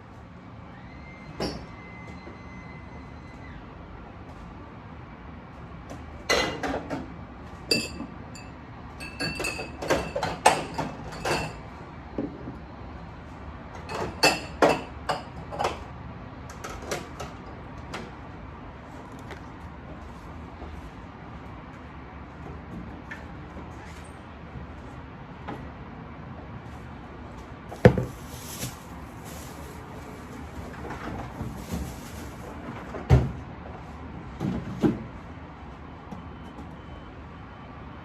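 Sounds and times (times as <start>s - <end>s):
dishes and cutlery clinking: 7.7s - 11.6s, 13.9s - 15.8s.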